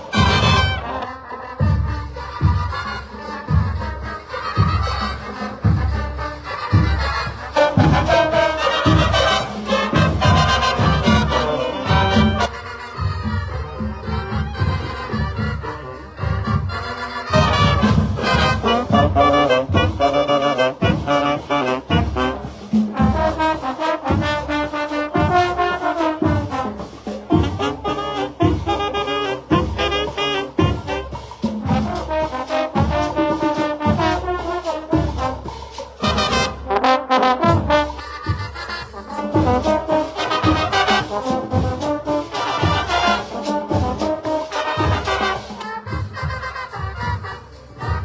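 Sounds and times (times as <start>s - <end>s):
brass band playing: 0.0s - 48.0s
low drum beat: 17.3s - 38.4s, 39.1s - 47.2s.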